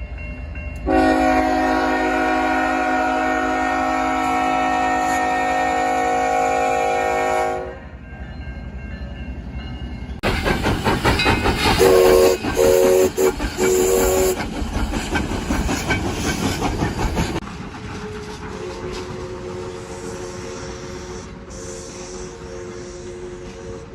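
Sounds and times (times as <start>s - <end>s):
passing train rumble: 0.0s - 23.9s
train horn blasts: 0.8s - 8.0s, 11.8s - 14.4s, 18.6s - 23.9s.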